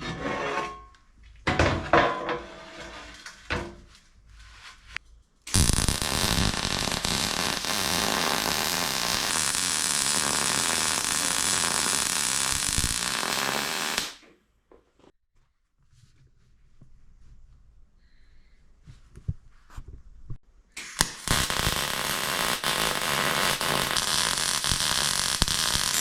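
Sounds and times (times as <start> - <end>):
electric arc welder buzzing: 5.5 - 14.2, 20.8 - 26.0.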